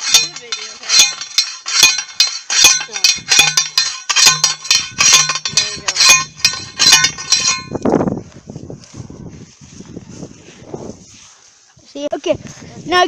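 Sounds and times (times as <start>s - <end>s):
sharp metallic clinks: 0.0s - 8.0s.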